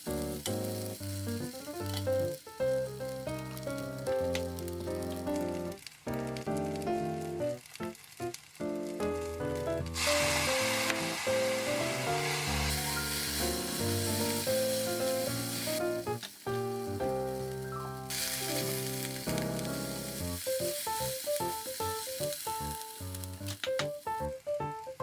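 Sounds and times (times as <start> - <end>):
food sizzling in a pan: 0.0 - 24.5
background music: 8.6 - 25.0.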